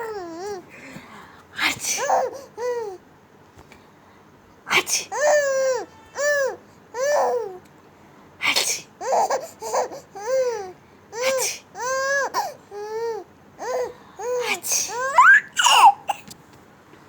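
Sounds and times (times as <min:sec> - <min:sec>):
sneezes: 0:01.6 - 0:02.2, 0:04.7 - 0:05.2, 0:08.4 - 0:09.0, 0:11.2 - 0:11.7, 0:14.4 - 0:16.3
baby laughing: 0:09.0 - 0:16.3.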